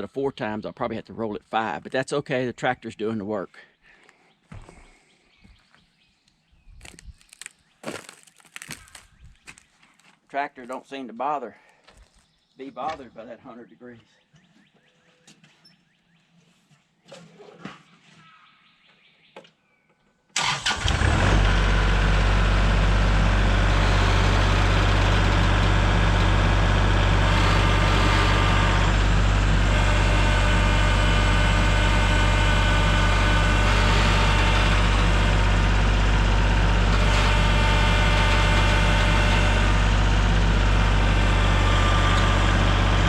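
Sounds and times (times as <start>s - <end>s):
engine starting and running: 20.4s - 43.0s.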